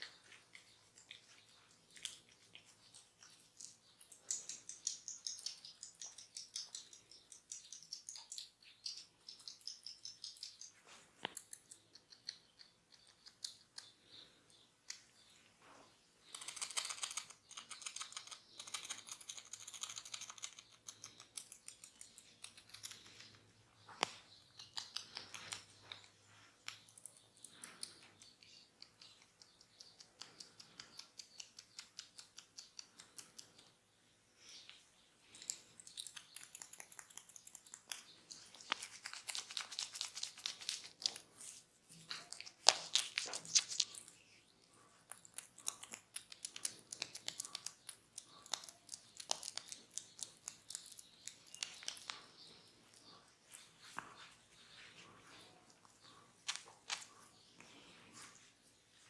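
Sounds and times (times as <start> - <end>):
fingers rubbing on skin and hair: 35.4 - 59.0.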